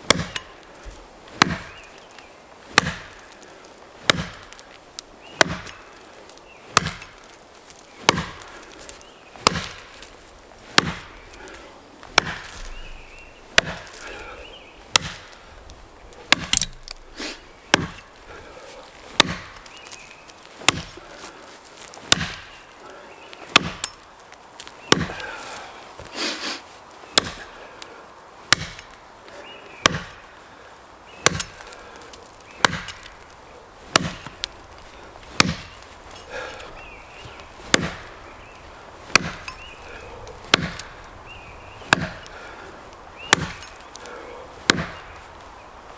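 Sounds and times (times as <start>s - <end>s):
axe chopping into tree trunk: 0.0s - 4.7s, 5.4s - 6.1s, 6.7s - 7.4s, 8.0s - 14.3s, 14.9s - 15.4s, 16.1s - 18.4s, 19.1s - 22.7s, 23.4s - 24.0s, 24.6s - 25.4s, 27.2s - 27.6s, 28.5s - 29.0s, 29.8s - 30.2s, 31.2s - 45.4s.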